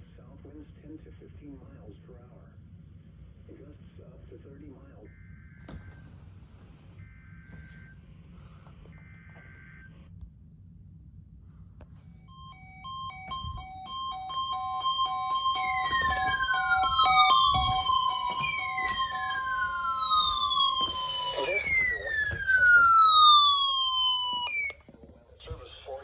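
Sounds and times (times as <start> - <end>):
emergency vehicle siren: 5.4 - 9.9, 12.2 - 24.8
digital data tones burst: 13.0 - 24.8.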